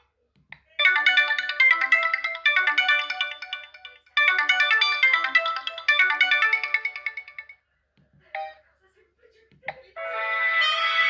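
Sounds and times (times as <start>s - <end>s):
phone electronic melody: 0.8s - 7.6s.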